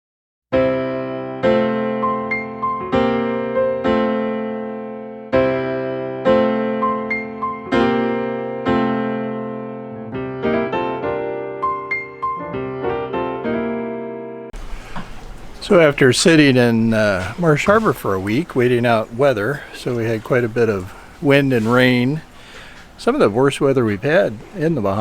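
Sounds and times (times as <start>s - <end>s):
electric piano playing slow chords: 0.6s - 15.2s.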